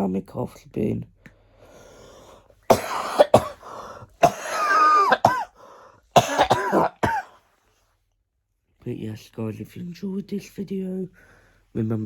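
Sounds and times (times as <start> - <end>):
person coughing harshly: 2.7 - 5.6, 6.2 - 7.4.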